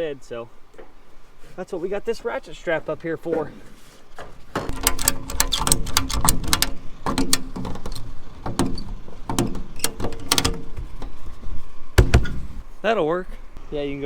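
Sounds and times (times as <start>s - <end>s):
ratchet strap clicking: 4.7s - 11.1s.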